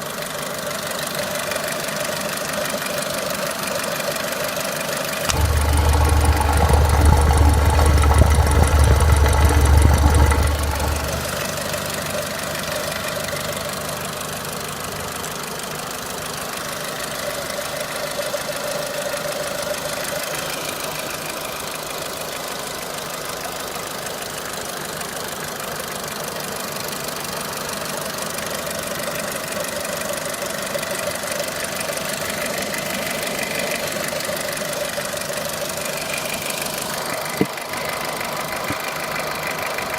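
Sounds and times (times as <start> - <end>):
car engine running: 5.2 - 20.3, 27.8 - 39.9
loud low engine rumble: 5.2 - 20.4.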